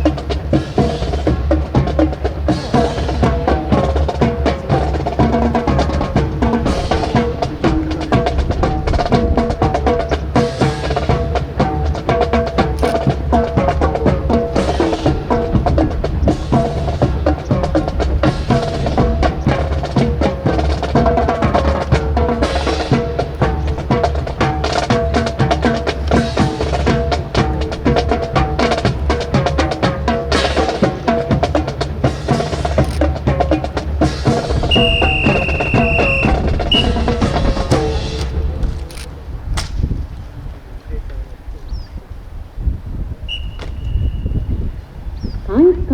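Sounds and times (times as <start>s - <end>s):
drum-led marching music: 0.0s - 40.0s
sharp wood-like clacks: 37.7s - 40.0s.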